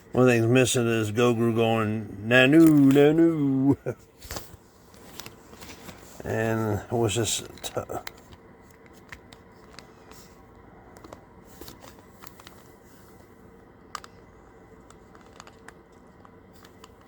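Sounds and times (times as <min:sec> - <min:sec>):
low steady room hiss: 0:00.0 - 0:17.0
clicks and rustles of small objects: 0:02.4 - 0:06.6, 0:07.2 - 0:17.0.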